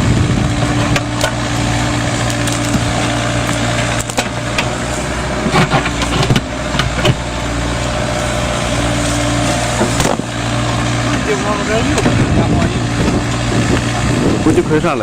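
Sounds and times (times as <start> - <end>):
diesel engine running: 0.0 - 15.0
sharp knocks and clatter: 5.4 - 7.2.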